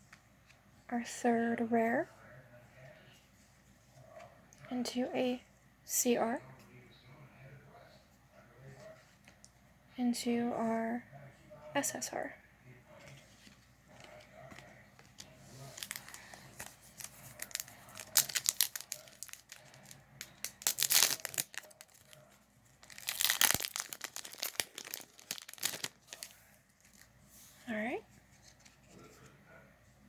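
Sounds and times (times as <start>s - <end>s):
wrapper crinkling and tearing: 15.6s - 27.1s.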